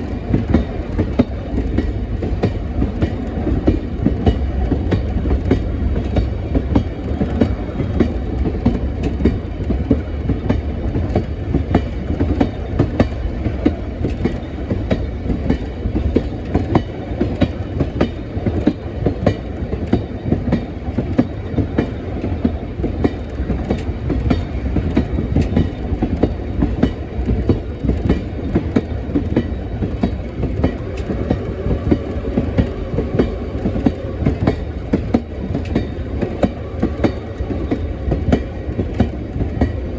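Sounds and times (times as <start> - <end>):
train wheels rumbling on track: 0.0 - 39.9.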